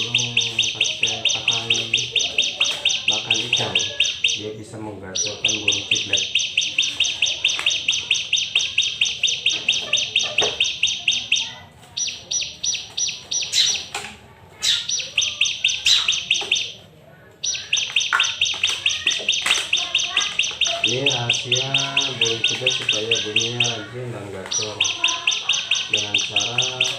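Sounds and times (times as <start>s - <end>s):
bird chattering song: 0.0s - 26.9s
sharp clicks: 5.2s - 11.4s, 14.8s - 16.8s, 17.4s - 23.8s.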